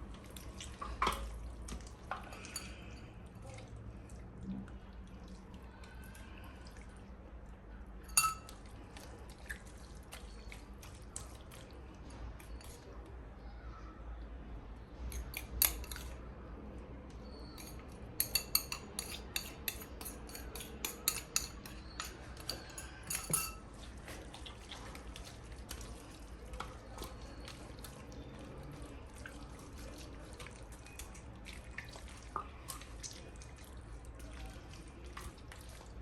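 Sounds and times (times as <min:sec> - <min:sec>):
utensils clinking against dishes: 0:02.2 - 0:03.1, 0:08.0 - 0:08.6, 0:15.1 - 0:16.2, 0:17.4 - 0:23.7.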